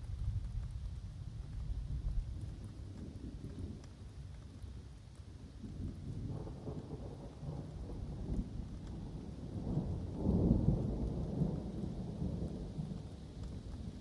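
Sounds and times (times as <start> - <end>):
steady rain: 0.0 - 14.0.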